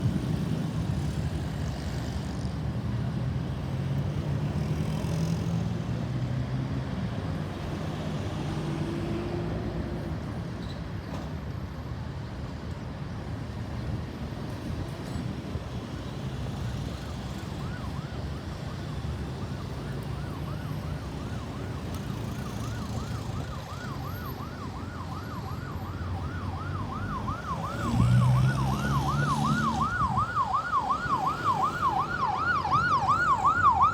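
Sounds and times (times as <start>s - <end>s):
road traffic engines: 0.0s - 33.9s
ambulance siren yelping: 16.9s - 33.9s.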